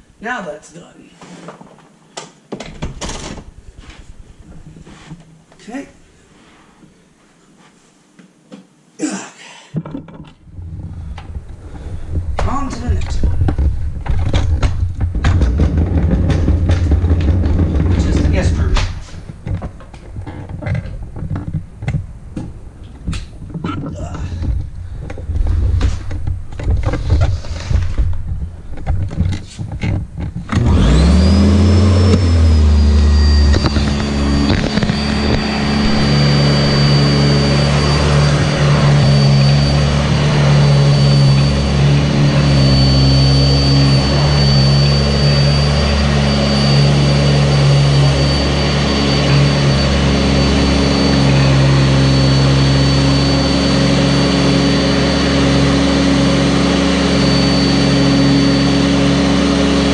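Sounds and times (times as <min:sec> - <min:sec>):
vacuum cleaner motor whining: 0:10.7 - 0:18.7, 0:30.3 - 0:59.9.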